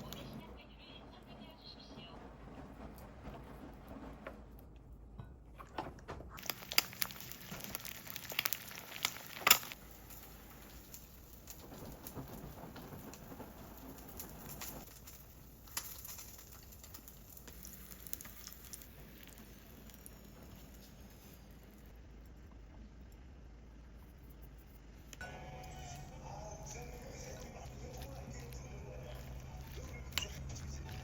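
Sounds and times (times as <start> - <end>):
light crackling patter: 6.3 - 22.4, 23.9 - 31.0.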